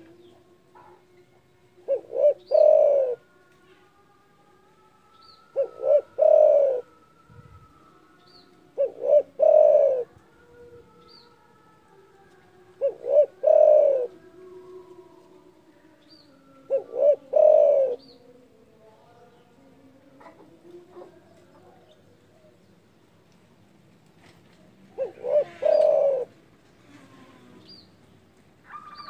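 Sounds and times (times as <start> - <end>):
dove cooing: 1.8 - 3.3, 5.5 - 7.0, 8.7 - 10.2, 12.8 - 15.3, 16.5 - 18.1, 24.9 - 26.4.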